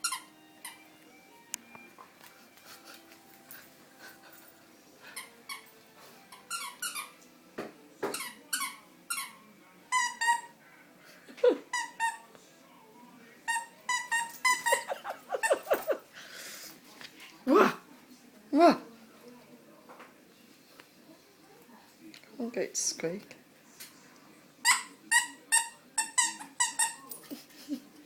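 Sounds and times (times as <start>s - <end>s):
squeaky dog toy squeaking: 0.0s - 0.8s, 5.2s - 5.7s, 6.3s - 7.2s, 8.1s - 10.5s, 11.7s - 12.2s, 13.5s - 14.9s, 24.6s - 27.2s.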